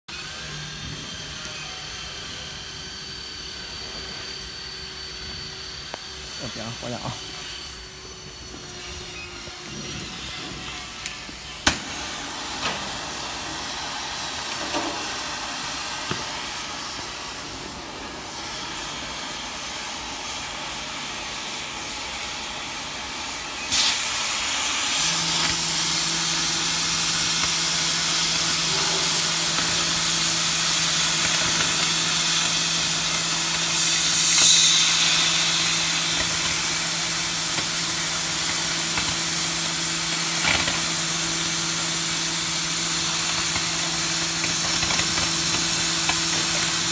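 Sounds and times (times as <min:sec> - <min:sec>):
cutting torch hissing: 0:00.2 - 0:46.9.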